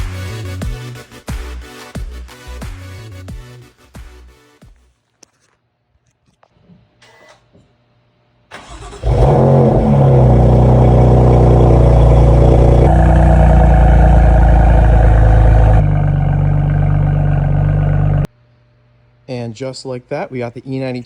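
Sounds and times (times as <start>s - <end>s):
engine cranking: 8.5s - 18.3s
car engine idling: 9.0s - 18.3s.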